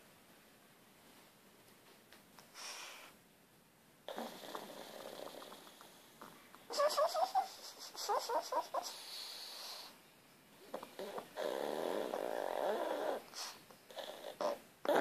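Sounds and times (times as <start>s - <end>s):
dog snoring: 4.1s - 10.0s, 10.7s - 15.0s
dog whimpering: 6.7s - 9.9s, 10.7s - 15.0s.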